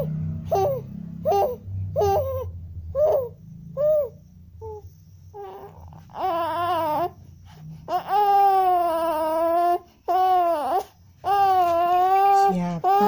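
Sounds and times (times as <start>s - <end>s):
baby crying: 0.0s - 7.2s, 7.8s - 13.0s
low engine rumble: 0.0s - 13.0s.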